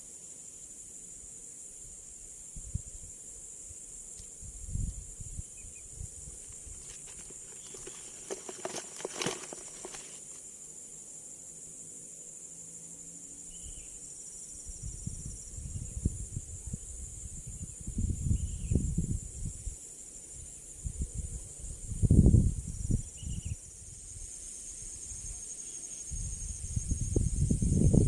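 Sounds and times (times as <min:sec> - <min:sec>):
insects droning: 0:00.0 - 0:28.0
rustling: 0:06.4 - 0:10.4.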